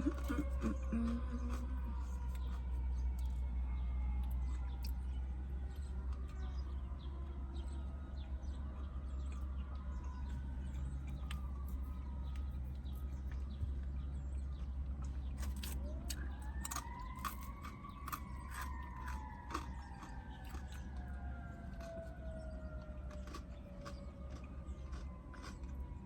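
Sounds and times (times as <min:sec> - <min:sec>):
crunchy chewing and biting: 0:00.0 - 0:06.6, 0:08.4 - 0:26.0
distant siren wailing: 0:00.0 - 0:26.0.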